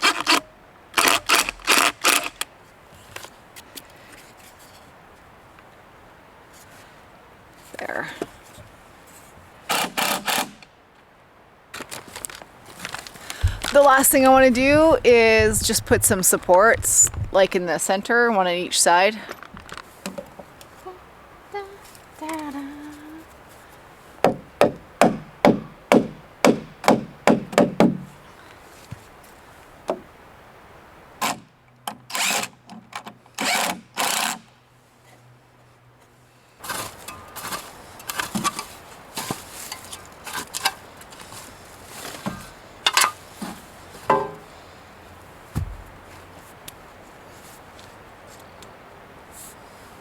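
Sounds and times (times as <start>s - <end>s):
wood and tools knocking: 13.4s - 17.6s, 42.2s - 44.5s, 45.6s - 46.0s
hammer striking wooden boards: 24.2s - 28.1s, 44.1s - 44.5s.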